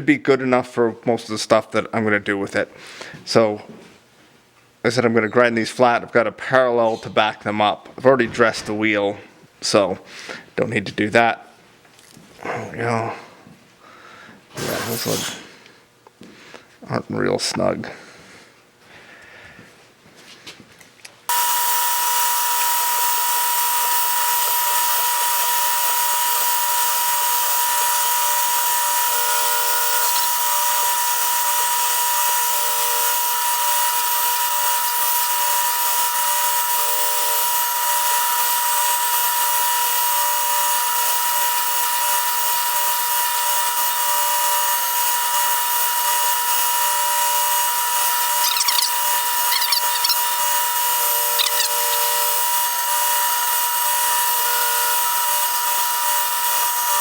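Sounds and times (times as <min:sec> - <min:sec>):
surface grinder whining: 0:21.3 - 0:38.0, 0:45.6 - 0:57.0.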